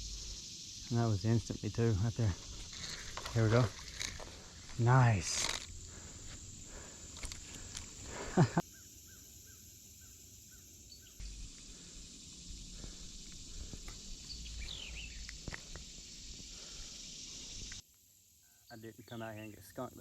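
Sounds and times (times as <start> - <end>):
falling bird calls: 1.2 - 17.8
small repeated bird chirps: 7.8 - 19.7.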